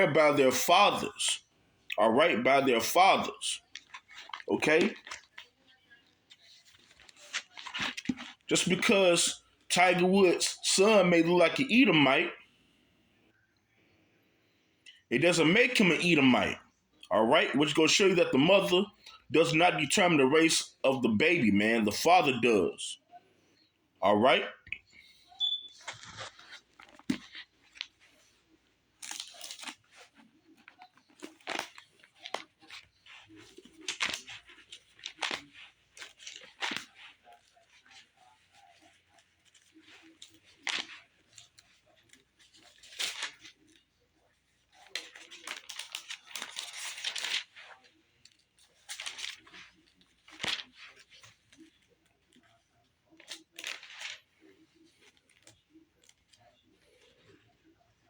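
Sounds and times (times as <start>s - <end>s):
thin paper pages rustling: 2.2s - 12.1s, 25.0s - 58.0s
paper snapping: 50.3s - 51.0s.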